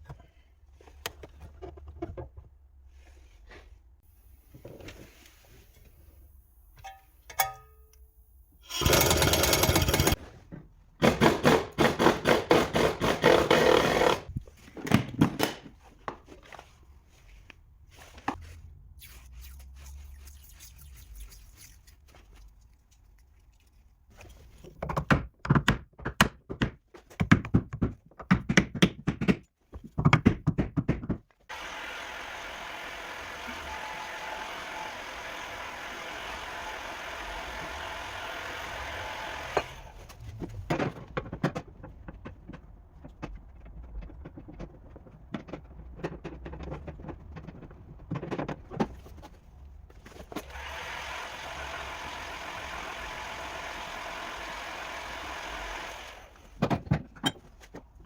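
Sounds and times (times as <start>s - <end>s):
clicks and thuds: 24.6s - 31.4s.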